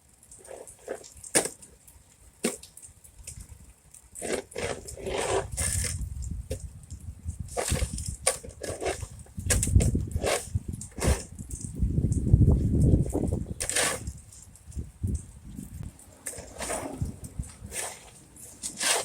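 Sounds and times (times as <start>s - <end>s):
footsteps crunching in slush: 16.3s - 19.0s.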